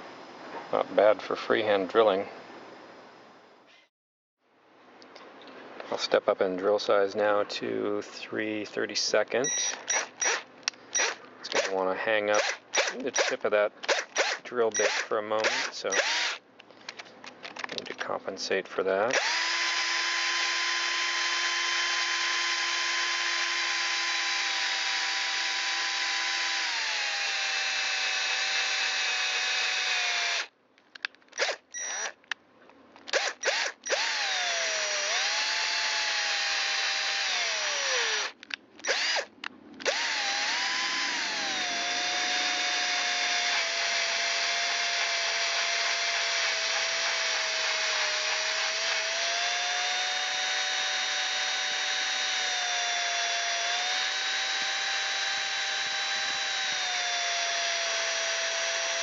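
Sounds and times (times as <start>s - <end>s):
drill trigger blips: 9.4s - 16.4s, 19.1s - 30.5s, 31.3s - 32.2s, 33.1s - 59.0s
electric drill motor whining: 9.5s - 11.8s, 12.4s - 16.4s, 19.1s - 30.5s, 31.4s - 32.2s, 33.1s - 59.0s.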